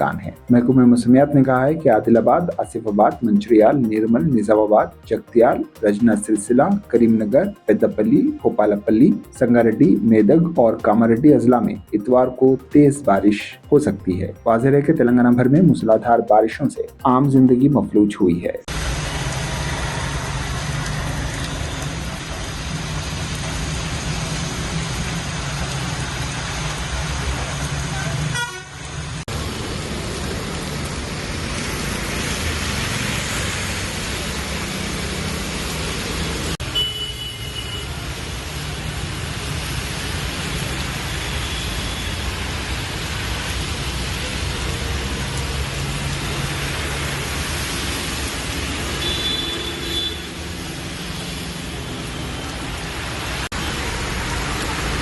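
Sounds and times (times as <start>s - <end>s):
car horn toots: 28.3s - 28.8s, 36.7s - 37.9s, 49.0s - 50.3s
traffic hum: 42.4s - 55.0s.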